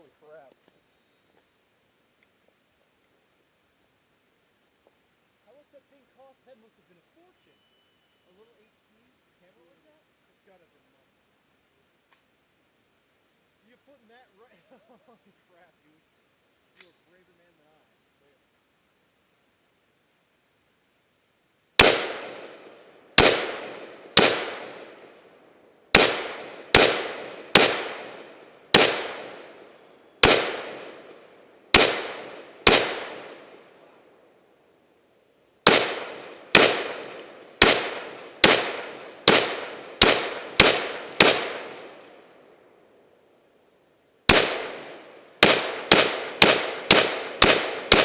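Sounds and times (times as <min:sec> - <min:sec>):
rifle shots: 0:21.8 - 0:25.2, 0:25.9 - 0:33.8, 0:35.6 - 0:42.2, 0:44.3 - 0:48.0.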